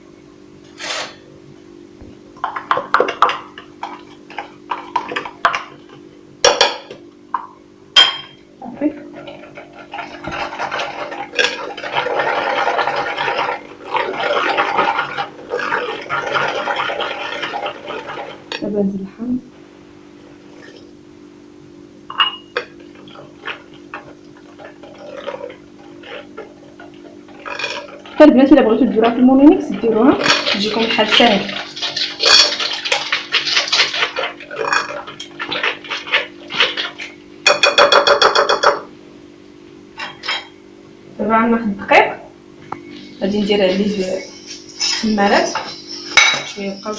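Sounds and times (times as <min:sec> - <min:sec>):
batter stirred in a bowl: 0:22.6 - 0:38.0, 0:42.9 - 0:46.9
utensil clinking on bowl: 0:30.1 - 0:38.8, 0:44.8 - 0:46.9.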